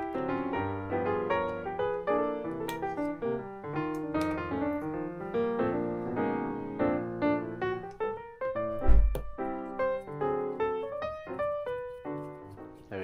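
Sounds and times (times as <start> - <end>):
piano music: 0.0 - 13.0
short low thump: 8.8 - 9.4.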